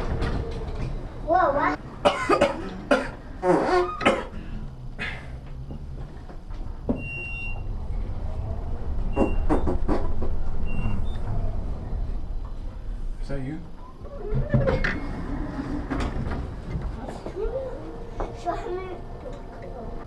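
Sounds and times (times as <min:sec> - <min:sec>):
low steady hum: 0:00.0 - 0:20.0
fake fart noises: 0:03.4 - 0:04.1.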